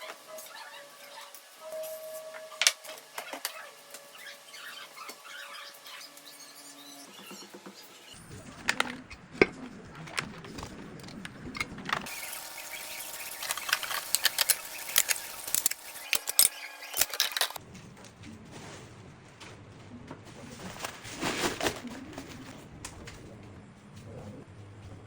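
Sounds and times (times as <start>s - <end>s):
utensils and dishware clinking: 8.2s - 17.6s.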